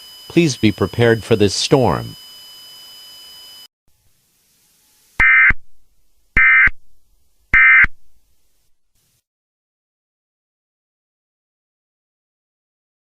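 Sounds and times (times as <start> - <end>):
buzzy data tone bursts: 0.0 - 8.2.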